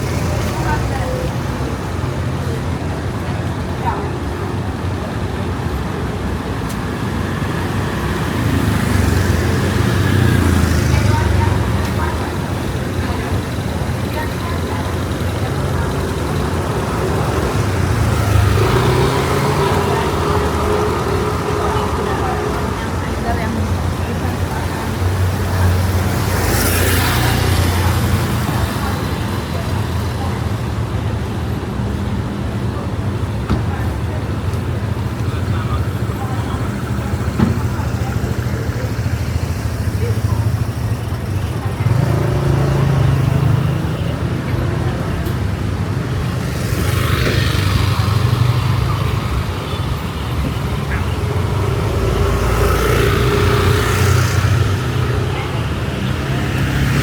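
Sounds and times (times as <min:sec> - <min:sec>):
traffic engine hum: 0:00.0 - 0:57.0
vehicle passing: 0:07.2 - 0:30.7, 0:33.7 - 0:57.0
vehicle passing close by: 0:41.2 - 0:57.0.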